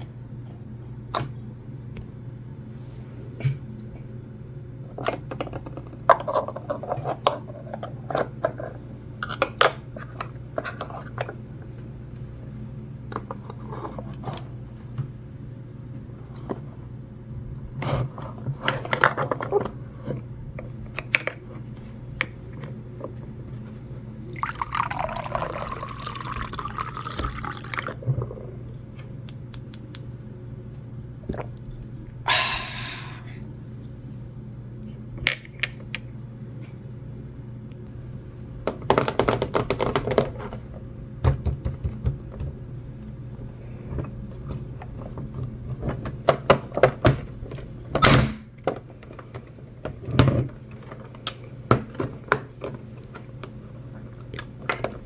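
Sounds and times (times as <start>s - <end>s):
liquid pouring: 24.2s - 28.0s.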